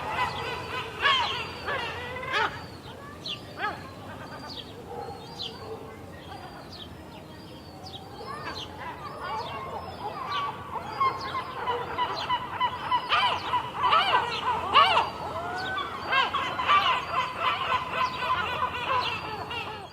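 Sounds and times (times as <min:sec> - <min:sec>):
gulls calling: 0:00.0 - 0:07.2, 0:07.8 - 0:19.9.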